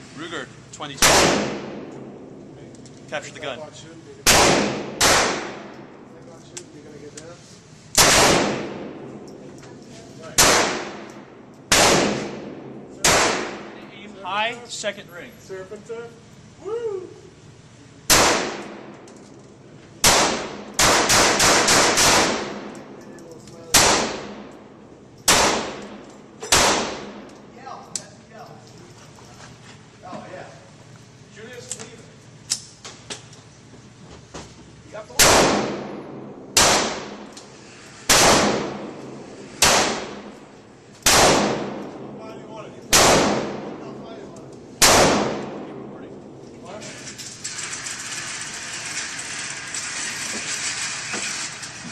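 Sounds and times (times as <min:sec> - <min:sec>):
pistol shots: 0:01.0 - 0:01.9, 0:04.2 - 0:05.8, 0:08.0 - 0:09.0, 0:10.4 - 0:13.8, 0:18.1 - 0:19.0, 0:20.0 - 0:22.8, 0:23.7 - 0:24.6, 0:25.3 - 0:27.3, 0:35.2 - 0:37.3, 0:38.1 - 0:40.3, 0:41.0 - 0:42.2, 0:42.9 - 0:44.0, 0:44.8 - 0:46.0.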